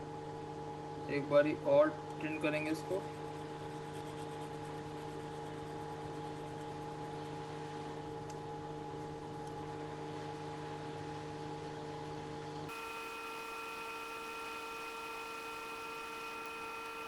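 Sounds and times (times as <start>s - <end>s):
electrical hum with tones: 0.0s - 17.0s
fan-like hiss: 12.7s - 17.0s.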